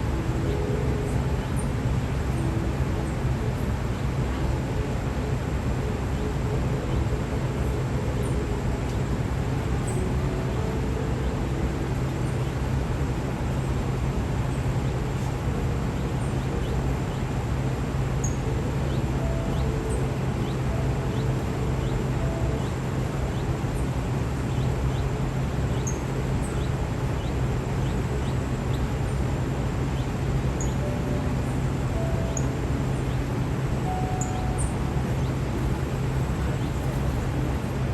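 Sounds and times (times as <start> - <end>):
low machinery hum: 0.0 - 37.9
small bird chirping: 35.5 - 37.8.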